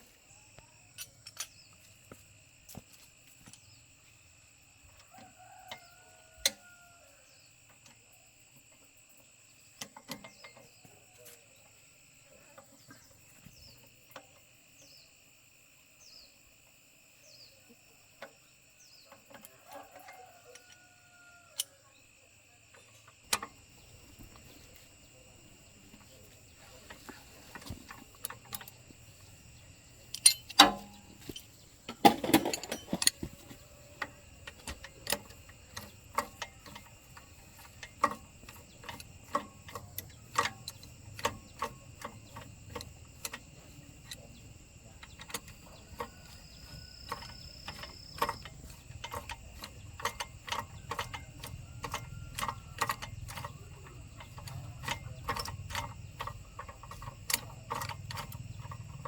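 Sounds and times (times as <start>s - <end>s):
light metallic clicks: 22.7s - 59.0s.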